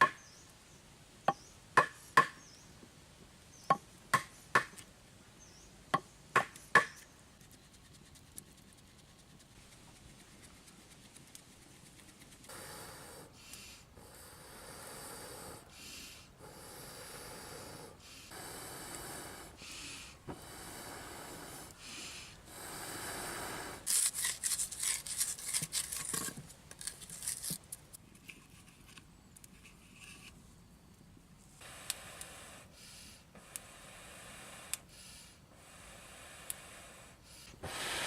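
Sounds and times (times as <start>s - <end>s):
rasping rubbing strokes: 23.8s - 27.6s.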